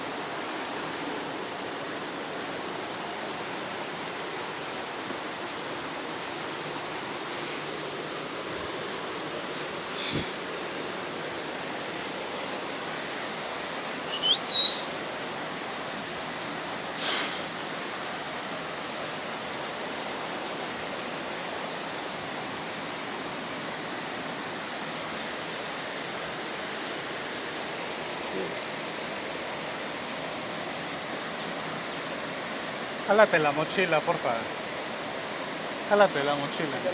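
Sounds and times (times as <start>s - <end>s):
waterfall rushing: 0.0s - 36.9s
bird chirp: 14.0s - 15.0s.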